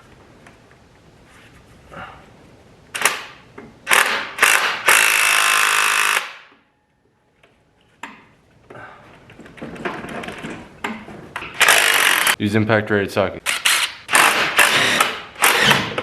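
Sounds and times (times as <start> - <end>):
impact wrench hammering: 13.7 - 16.0.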